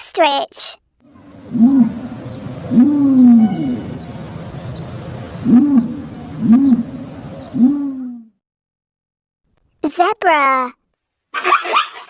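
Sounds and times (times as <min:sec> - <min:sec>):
ostrich booming hoots: 0:01.1 - 0:08.4.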